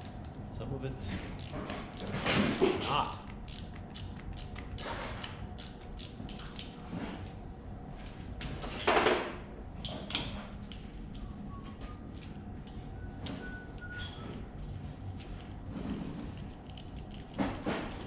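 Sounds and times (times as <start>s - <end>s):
tools and metal parts clicking: 0.0s - 0.4s, 1.4s - 6.7s.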